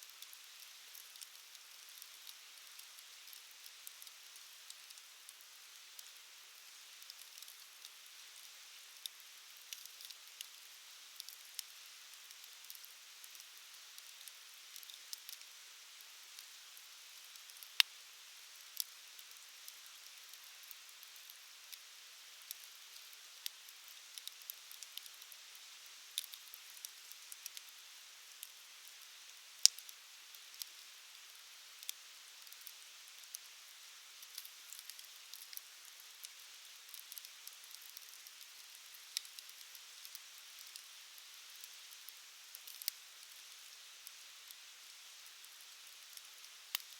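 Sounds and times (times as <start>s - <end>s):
faint steady hiss: 0.0s - 46.9s
campfire crackling and popping: 14.0s - 15.4s, 26.2s - 27.7s, 29.6s - 29.8s, 34.2s - 40.8s, 42.6s - 43.0s, 46.1s - 46.9s.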